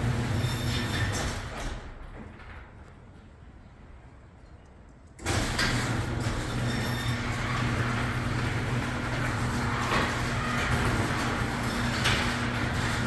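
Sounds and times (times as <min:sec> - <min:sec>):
garage door opener motor hum: 0:00.0 - 0:02.6, 0:05.2 - 0:13.0
chain and door running on track: 0:05.2 - 0:13.0.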